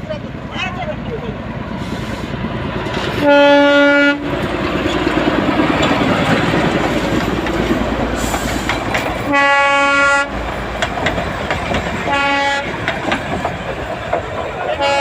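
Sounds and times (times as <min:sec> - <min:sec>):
train wheels rumbling and clattering: 0:00.0 - 0:15.0
train horn blasts: 0:03.2 - 0:04.3, 0:09.3 - 0:10.4, 0:12.1 - 0:12.8, 0:14.8 - 0:15.0.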